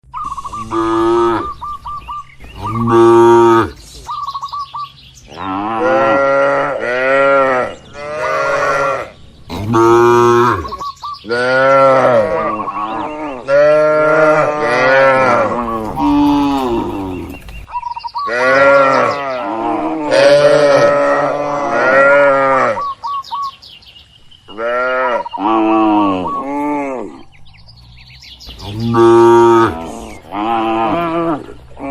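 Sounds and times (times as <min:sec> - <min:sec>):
cattle mooing: 0:00.5 - 0:01.6, 0:02.6 - 0:03.8, 0:05.3 - 0:17.4, 0:18.3 - 0:22.9, 0:28.6 - 0:31.9.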